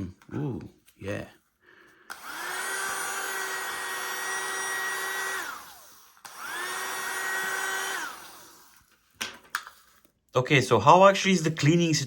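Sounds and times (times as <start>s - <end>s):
small vacuum motor whining: 2.1s - 9.0s.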